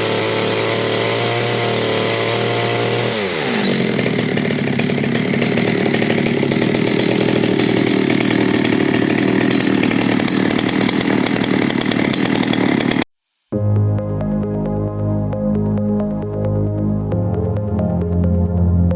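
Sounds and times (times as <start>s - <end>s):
chainsaw engine running: 0.0s - 13.1s
electronic background music: 13.6s - 18.9s.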